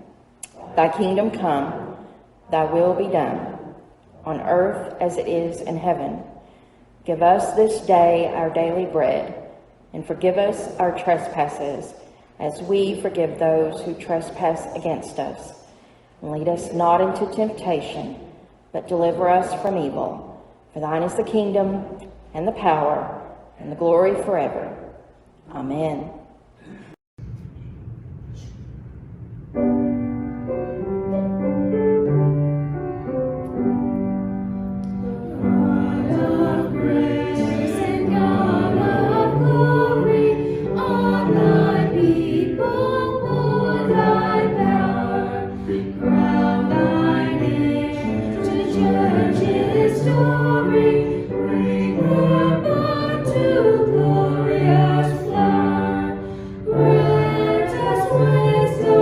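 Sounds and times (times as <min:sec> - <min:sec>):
instrumental church music: 0:27.2 - 0:59.0
choir singing a hymn: 0:34.9 - 0:59.0.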